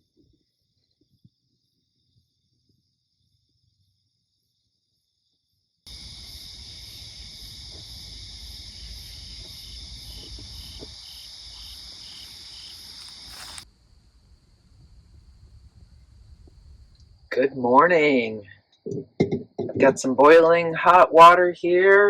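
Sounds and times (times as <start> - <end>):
insects trilling: 4.4 - 17.3
pulsing insect call: 5.9 - 15.1.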